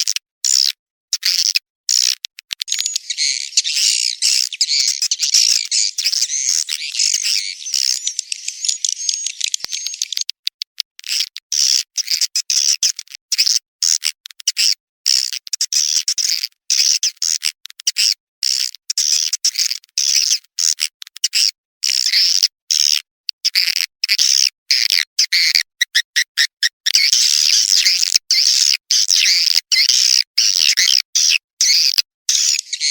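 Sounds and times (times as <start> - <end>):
swiftlets twittering: 2.7 - 10.2, 32.3 - 32.9.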